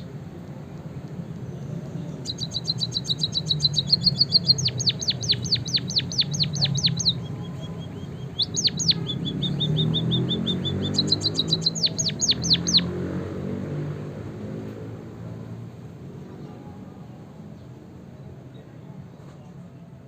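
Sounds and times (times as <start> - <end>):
finch singing: 1.4 - 13.0.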